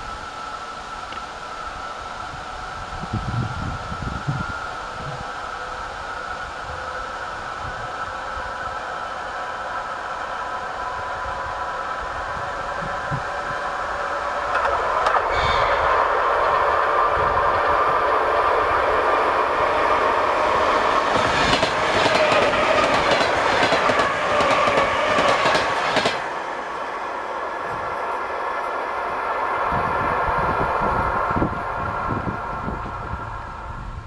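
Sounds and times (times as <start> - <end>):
train wheels clacking on rails: 14.4 - 26.8.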